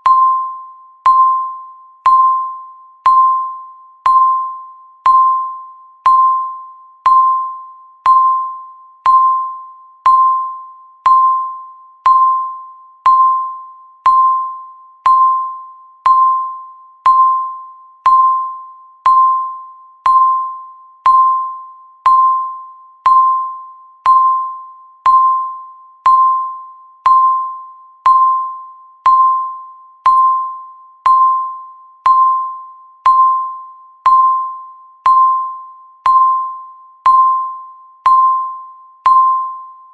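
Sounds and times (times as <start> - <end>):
electronic timer ding: 0.0 - 39.9.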